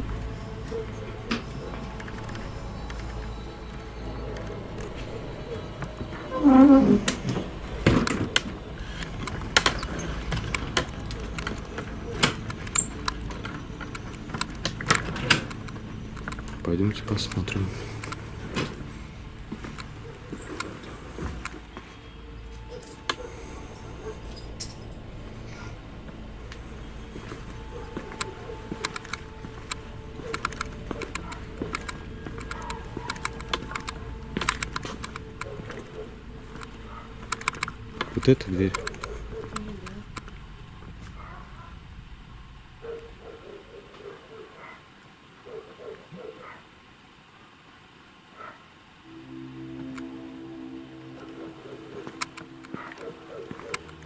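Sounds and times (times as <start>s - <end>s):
low hum: 0.0s - 44.4s, 49.0s - 54.0s
sharp clicks and crackles: 8.0s - 16.7s, 27.2s - 35.9s, 36.5s - 41.4s.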